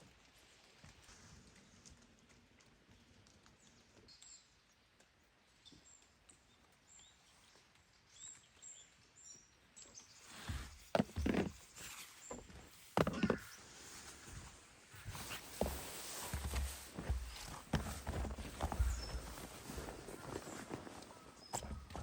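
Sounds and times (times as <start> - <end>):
forest ambience: 0.3 - 22.0
small birds chirping: 5.6 - 22.0.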